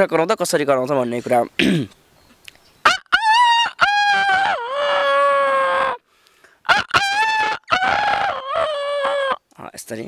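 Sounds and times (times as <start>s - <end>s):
man imitating rooster crow: 2.9s - 6.0s, 6.7s - 9.4s.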